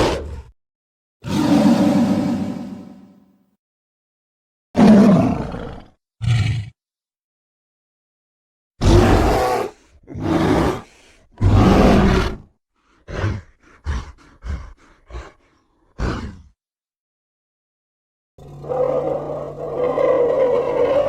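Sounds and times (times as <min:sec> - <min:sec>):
monster roars: 0:08.8 - 0:12.4, 0:18.4 - 0:21.0.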